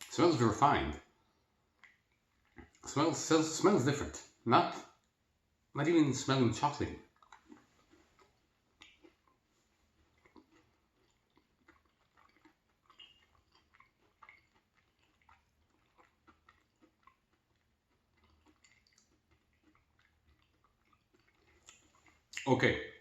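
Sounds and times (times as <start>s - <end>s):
chewing chocolate bar crunches: 7.0s - 22.5s.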